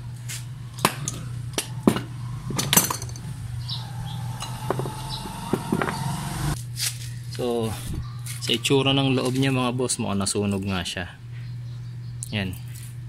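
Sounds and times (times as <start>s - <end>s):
low hum: 0.0s - 7.2s
metallic clinks and knocks: 0.9s - 3.3s.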